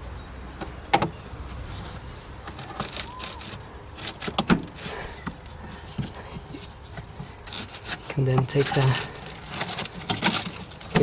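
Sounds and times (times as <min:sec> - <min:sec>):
plastic rustling: 0:02.5 - 0:05.2, 0:07.0 - 0:11.0.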